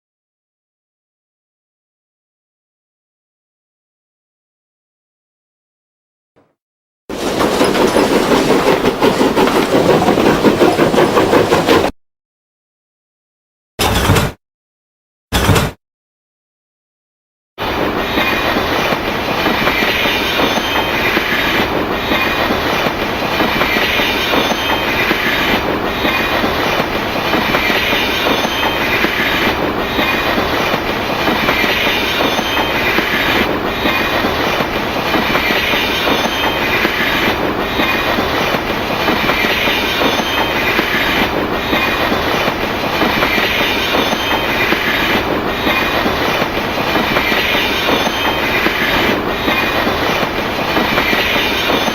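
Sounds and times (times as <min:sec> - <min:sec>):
wheels over rail joints: 0:07.1 - 0:11.9, 0:18.0 - 0:51.9
train rumbling on track: 0:07.1 - 0:12.0, 0:17.6 - 0:51.9.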